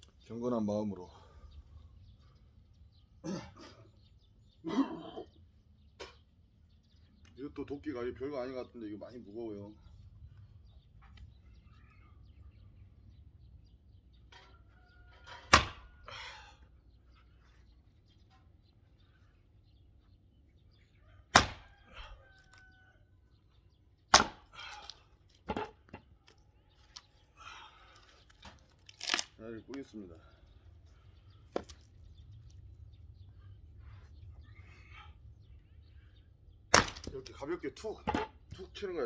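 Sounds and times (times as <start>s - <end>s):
axe chopping wood: 15.4s - 15.9s, 21.3s - 21.7s, 24.1s - 26.0s, 36.7s - 37.3s
wood splitting crackle: 21.3s - 21.7s, 24.1s - 27.1s, 27.9s - 29.4s, 36.7s - 37.4s.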